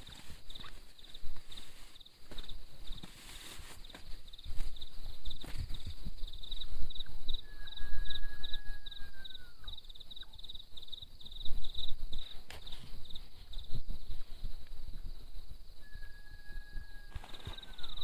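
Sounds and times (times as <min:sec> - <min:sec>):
insects chirping: 0:00.0 - 0:18.0
long whistled note: 0:15.8 - 0:18.0.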